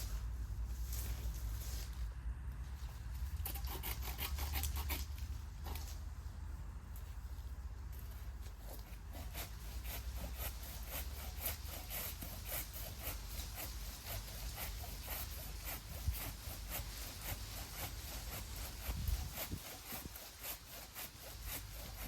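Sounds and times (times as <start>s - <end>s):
hand saw cutting wood: 3.2s - 6.1s, 7.9s - 22.0s.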